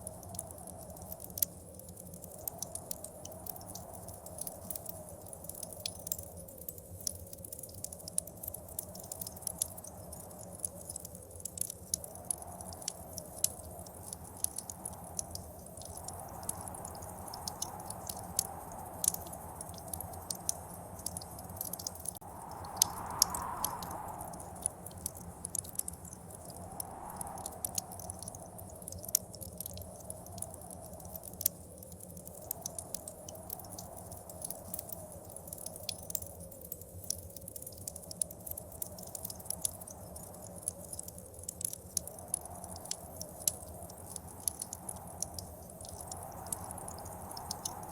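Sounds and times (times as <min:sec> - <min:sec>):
wood fire crackling and popping: 0:00.0 - 0:47.9
gusting wind: 0:12.0 - 0:31.2, 0:42.0 - 0:47.9.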